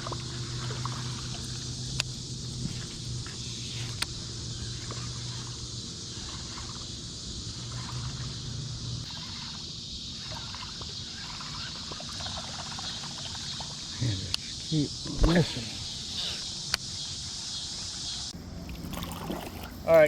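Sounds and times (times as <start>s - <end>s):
low steady hum: 0.0s - 20.0s
water and wind hiss: 0.0s - 20.0s.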